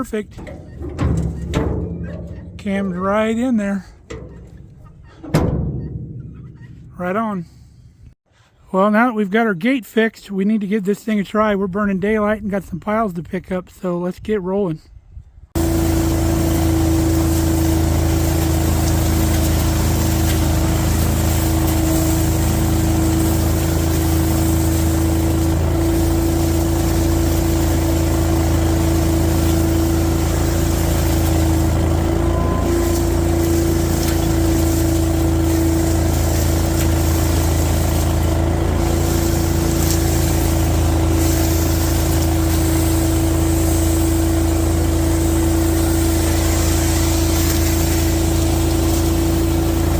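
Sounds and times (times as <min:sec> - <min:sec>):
constant hum: 0:00.0 - 0:08.2, 0:15.6 - 0:49.9
industrial vacuum engine drone: 0:15.6 - 0:49.9.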